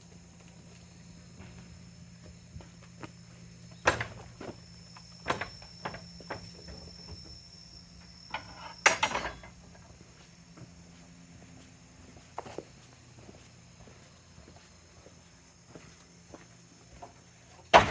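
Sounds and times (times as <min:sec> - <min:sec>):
sharp knocks and clinks: 0:03.8 - 0:07.5, 0:08.2 - 0:09.6.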